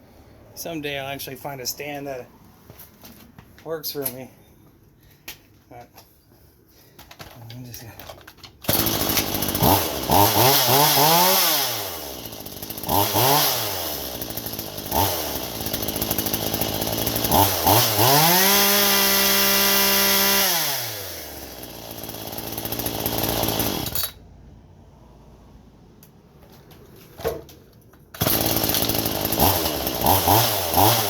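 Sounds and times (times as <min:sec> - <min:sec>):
chainsaw engine revving: 0:08.6 - 0:24.2, 0:28.2 - 0:31.0.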